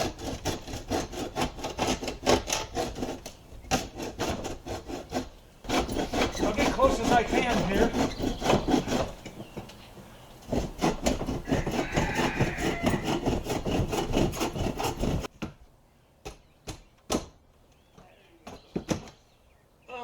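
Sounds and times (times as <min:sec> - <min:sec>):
bow saw cutting wood: 0:00.0 - 0:09.6, 0:10.4 - 0:15.3.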